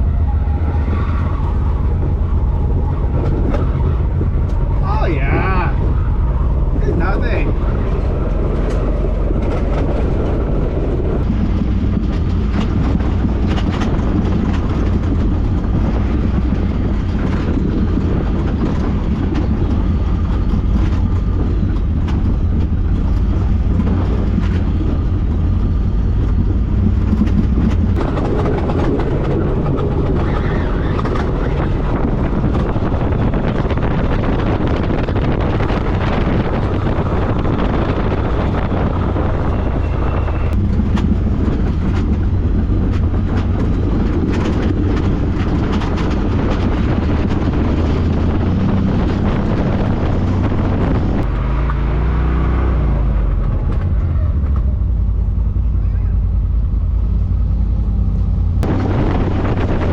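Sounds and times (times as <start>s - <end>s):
utility vehicle engine rumble: 0.0s - 59.9s
rattles and knocks: 5.8s - 39.9s, 40.5s - 51.3s.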